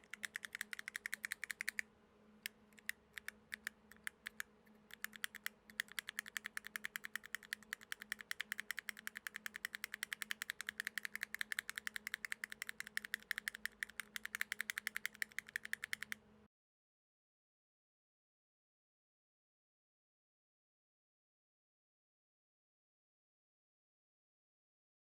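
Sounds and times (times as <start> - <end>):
mechanical keyboard typing: 0.0 - 1.8, 2.8 - 16.2.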